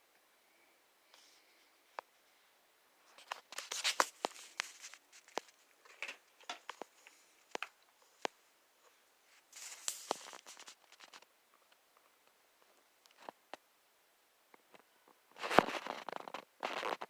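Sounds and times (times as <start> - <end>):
scraping rustles: 3.1 - 7.6, 9.3 - 11.3.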